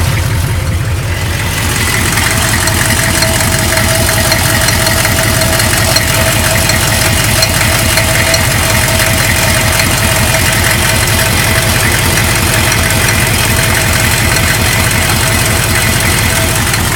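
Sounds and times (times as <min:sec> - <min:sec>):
metallic sound: 0:00.0 - 0:10.7
diesel engine idling: 0:00.0 - 0:16.9.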